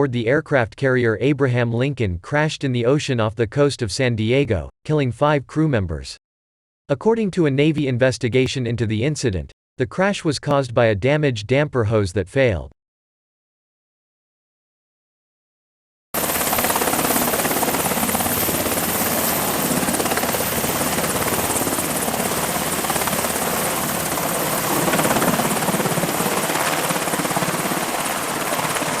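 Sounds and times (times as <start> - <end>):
helicopter rotor chopping: 16.2 - 29.0.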